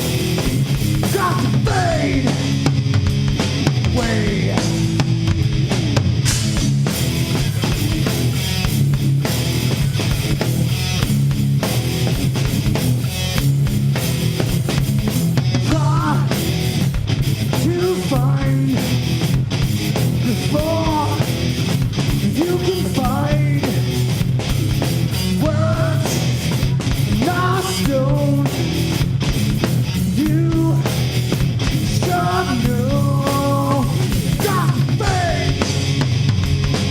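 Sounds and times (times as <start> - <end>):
live rock band playing: 0.0 - 36.9
man singing: 1.0 - 2.7, 3.8 - 5.1, 15.6 - 16.4, 17.5 - 19.0, 20.2 - 21.3, 22.2 - 23.9, 25.4 - 26.4, 27.2 - 28.8, 30.1 - 31.0, 31.9 - 35.7.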